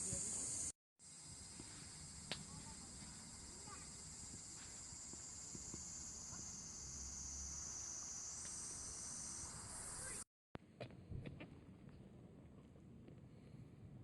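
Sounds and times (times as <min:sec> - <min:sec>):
night insects chirring: 0:00.0 - 0:10.2.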